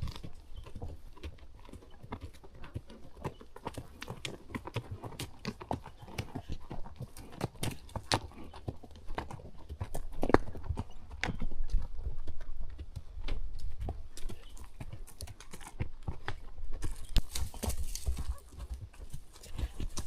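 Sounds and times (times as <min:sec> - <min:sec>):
horse hooves clip-clopping: 0:00.0 - 0:20.0.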